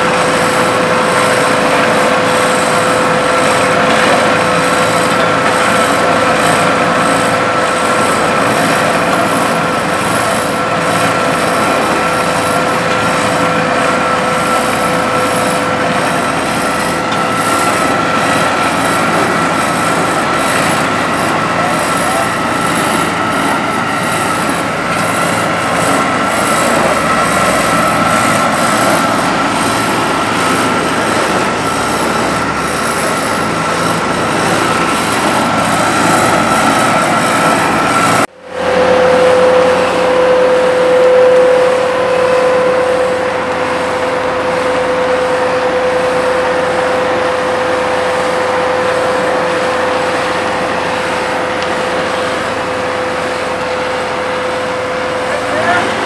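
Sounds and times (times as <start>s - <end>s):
continuous high whine: 0.0s - 56.0s
heavy machinery engines running: 0.0s - 56.0s.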